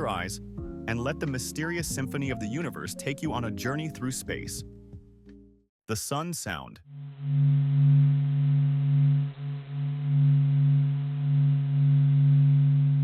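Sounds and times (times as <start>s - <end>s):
low humming drone with hiss: 6.9s - 13.0s.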